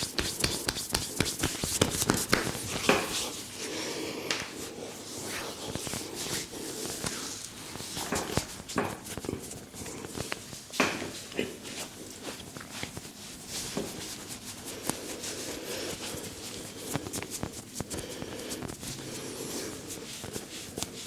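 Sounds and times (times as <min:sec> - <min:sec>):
sharp taps and slaps: 0:00.0 - 0:03.2
hands rubbing skin and hair: 0:00.0 - 0:03.5, 0:04.4 - 0:10.5, 0:11.7 - 0:21.0.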